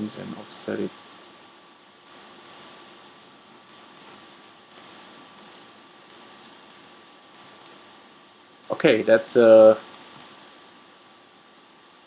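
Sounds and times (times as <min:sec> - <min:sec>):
faint steady hiss: 0:00.0 - 0:12.0
mouse and keyboard clicks: 0:02.1 - 0:02.7, 0:03.7 - 0:07.8, 0:08.6 - 0:10.3.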